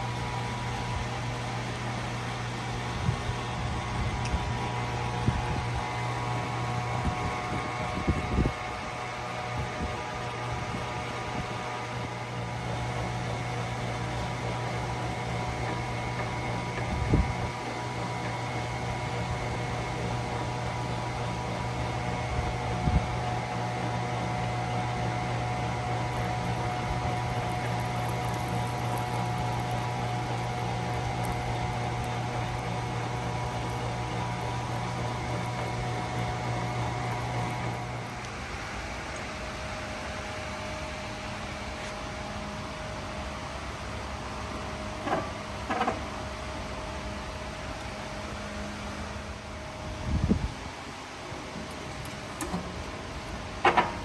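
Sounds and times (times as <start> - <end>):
grindstone motor humming: 25.7 - 38.7.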